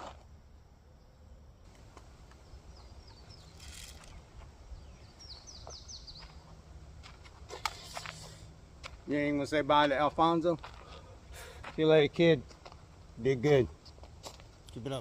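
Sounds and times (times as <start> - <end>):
faint low outdoor rumble: 0.0 - 15.0
small bird singing: 2.3 - 6.5
brief rustle: 3.5 - 4.2.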